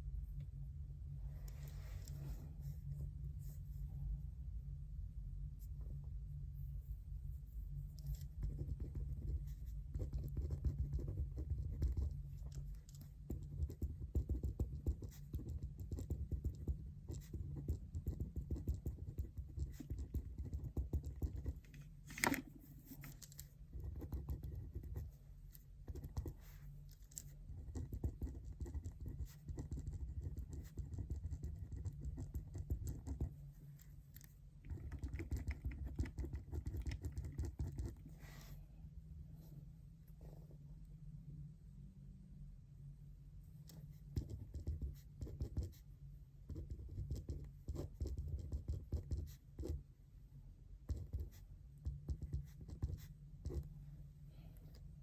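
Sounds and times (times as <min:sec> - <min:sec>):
pen scratching and tapping: 0:08.0 - 0:25.1, 0:25.9 - 0:33.4, 0:34.2 - 0:38.0, 0:43.7 - 0:45.8, 0:46.5 - 0:49.8, 0:50.9 - 0:53.7.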